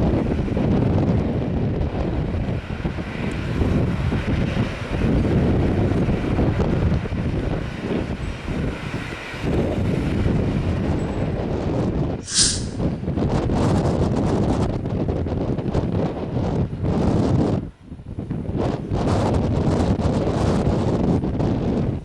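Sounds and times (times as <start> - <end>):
wind buffeting microphone: 0.0 - 22.0
short sharp hiss: 12.2 - 12.8.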